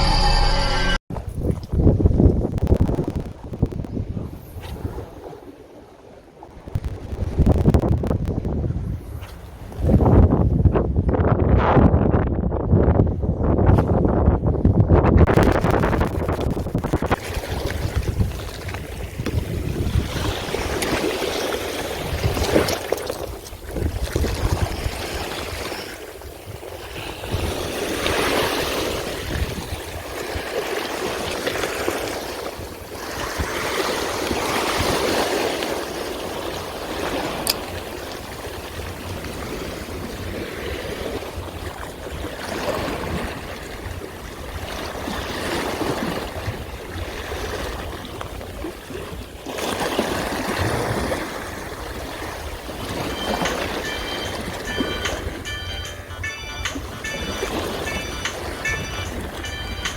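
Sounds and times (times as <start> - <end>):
wind rumble on microphone: 1.1 - 55.4
waves washing over rocks: 15.3 - 55.8.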